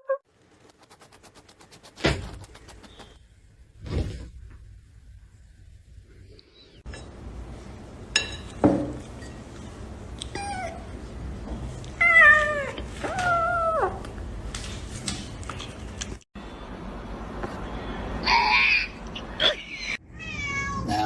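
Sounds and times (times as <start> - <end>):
cat meowing: 20.1 - 21.0.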